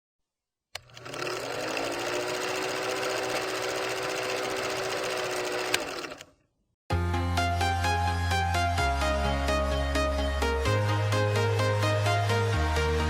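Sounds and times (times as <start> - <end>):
small motor humming: 0.8 - 6.3.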